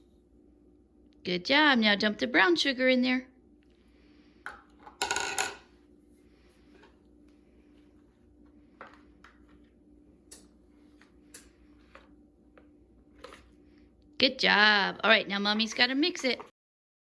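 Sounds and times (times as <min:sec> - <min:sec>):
faint steady hum: 0:00.0 - 0:16.5
kitchenware tapping bowl: 0:04.5 - 0:05.7.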